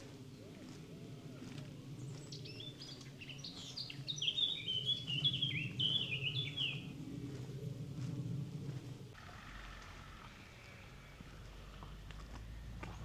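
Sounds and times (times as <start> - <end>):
songbird singing: 0.0 - 13.0
low steady rumble: 5.2 - 13.0.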